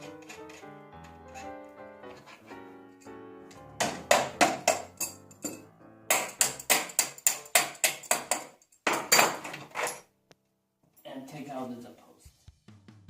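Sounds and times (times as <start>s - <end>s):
background music: 0.0s - 8.4s, 12.2s - 13.0s
sharp knocks on metal stand: 3.8s - 9.6s.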